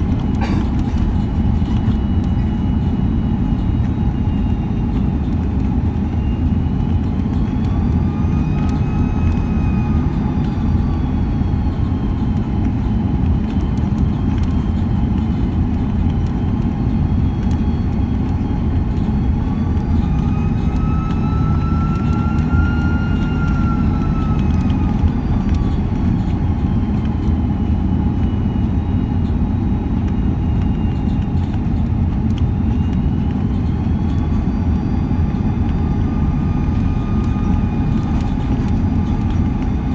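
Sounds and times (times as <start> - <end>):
airplane cabin engine roar: 0.0 - 39.9
jet engine whine: 0.0 - 39.9.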